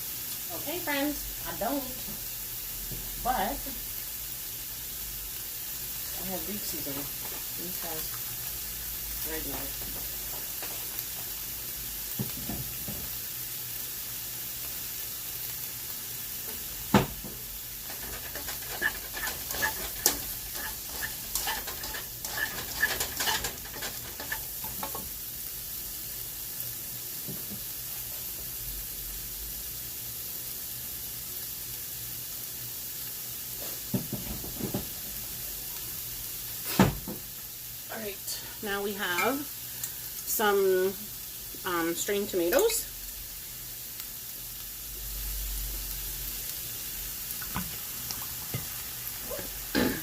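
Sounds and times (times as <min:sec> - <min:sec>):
food sizzling in frying pan: 0:00.0 - 0:50.0
clicks and rattles: 0:17.9 - 0:24.9.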